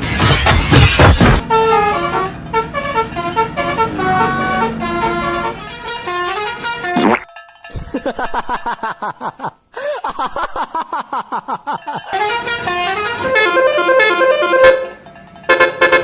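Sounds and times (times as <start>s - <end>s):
multi-tone bus horn: 1.4s - 7.2s, 12.1s - 16.0s.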